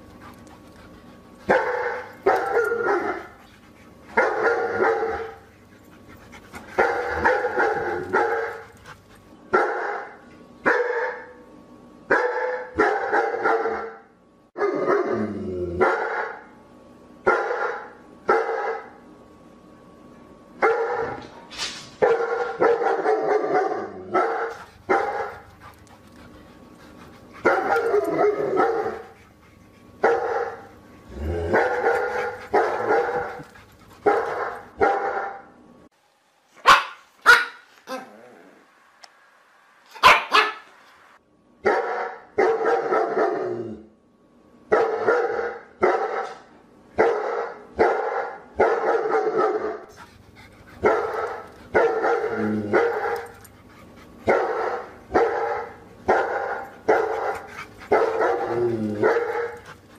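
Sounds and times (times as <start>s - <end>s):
dog barking: 1.5s - 3.3s, 4.1s - 5.4s, 6.8s - 8.6s, 9.5s - 11.4s, 12.1s - 14.0s, 15.8s - 16.4s, 17.3s - 19.0s, 20.6s - 21.2s, 22.0s - 25.4s, 27.4s - 29.0s, 30.0s - 30.7s, 31.5s - 33.4s, 34.0s - 35.5s, 36.6s - 37.7s, 40.0s - 40.7s, 41.6s - 43.4s, 44.7s - 49.9s, 50.8s - 53.3s, 54.3s - 59.6s.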